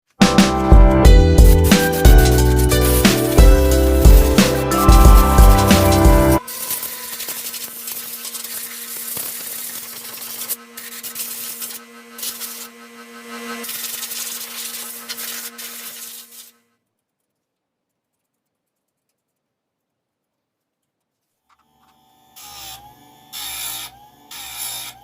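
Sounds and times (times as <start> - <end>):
power tool grinding: 1.1 - 16.6, 21.6 - 25.0.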